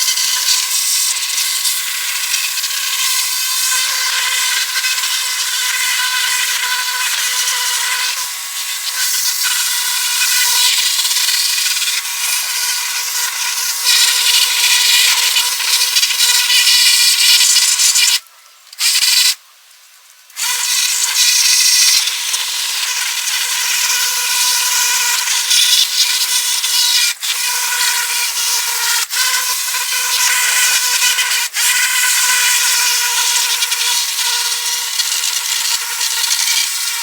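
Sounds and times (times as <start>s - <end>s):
pressure washer spraying: 0.0s - 18.2s, 18.8s - 19.4s.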